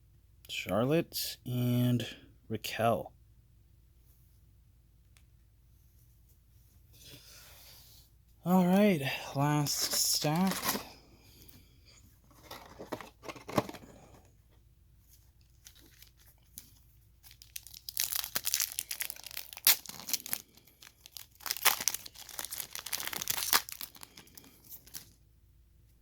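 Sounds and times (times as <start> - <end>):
card pack wrappers tearing and crinkling: 9.6 - 10.9, 15.4 - 25.2.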